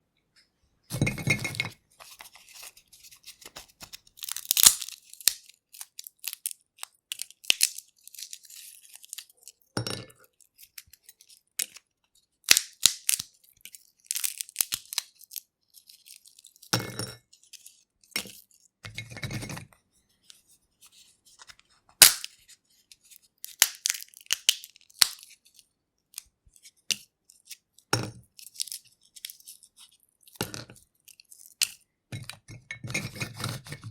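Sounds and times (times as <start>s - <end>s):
peanut shells cracking: 3.4s - 9.6s, 12.4s - 16.7s, 22.0s - 22.4s, 23.4s - 27.6s, 28.3s - 31.8s
shells crunching: 3.5s - 6.5s, 22.0s - 22.4s, 23.5s - 25.3s.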